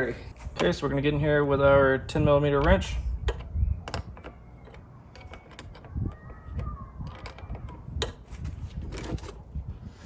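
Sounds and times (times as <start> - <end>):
wrench metal clicks: 2.5 - 8.2
squeaky creak of clamp: 2.6 - 9.4.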